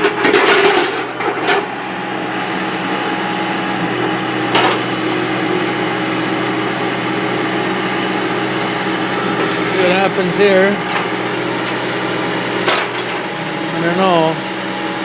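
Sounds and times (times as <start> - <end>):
knocks and clatter: 0.0 - 1.7, 4.5 - 4.8, 12.6 - 13.3
skid steer engine running: 0.0 - 15.0.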